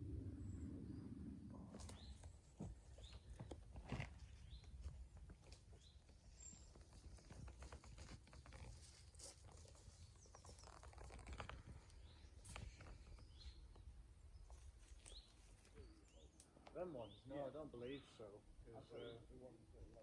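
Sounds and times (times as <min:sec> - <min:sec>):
steady low rumble: 0:00.0 - 0:03.0
faint crackles and rustles: 0:01.4 - 0:16.9
faint bird chirps: 0:09.9 - 0:19.5.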